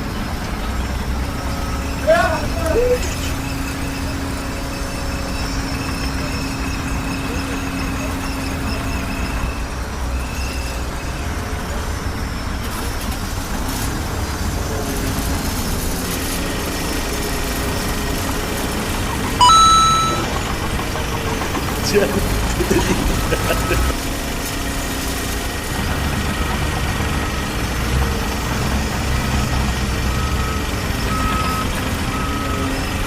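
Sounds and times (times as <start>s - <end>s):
engine rumbling: 18.3s - 24.3s
short sharp high tone: 19.4s - 20.4s.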